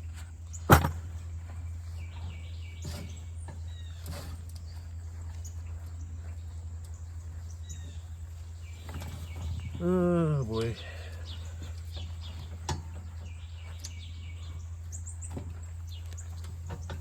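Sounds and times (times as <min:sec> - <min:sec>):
bird chirps: 0:00.0 - 0:17.0
steady low hum: 0:00.0 - 0:17.0
faint scuffs and rustles: 0:01.2 - 0:10.2.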